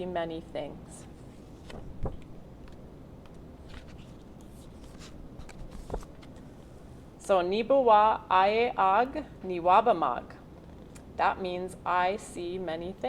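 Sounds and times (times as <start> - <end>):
faint paper rustling: 1.0 - 7.0.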